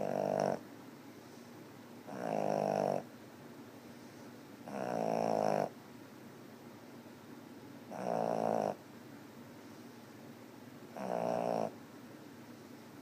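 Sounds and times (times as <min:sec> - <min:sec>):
pet snoring: 0:00.0 - 0:00.6, 0:02.1 - 0:03.1, 0:04.6 - 0:05.8, 0:07.9 - 0:08.8, 0:11.0 - 0:11.8.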